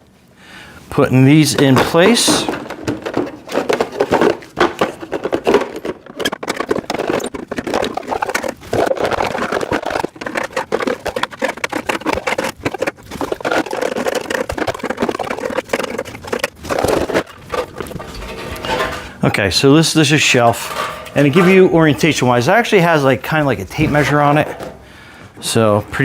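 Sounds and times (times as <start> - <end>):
scraping: 0.8 - 26.0
rack parts clattering knocks: 1.3 - 10.6, 16.5 - 25.0.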